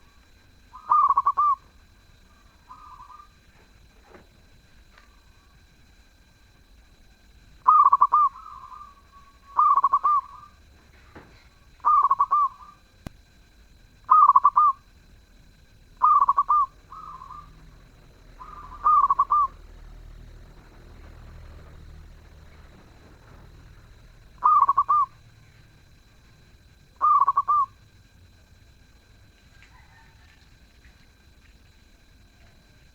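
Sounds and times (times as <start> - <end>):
dove cooing: 0.0 - 4.3, 7.6 - 13.0, 14.0 - 14.9, 15.9 - 27.9, 29.6 - 30.4.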